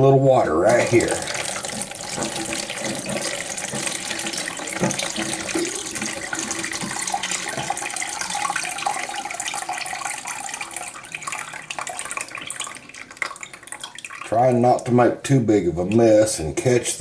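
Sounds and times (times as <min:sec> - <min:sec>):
water pouring into a bucket: 0:00.4 - 0:14.9.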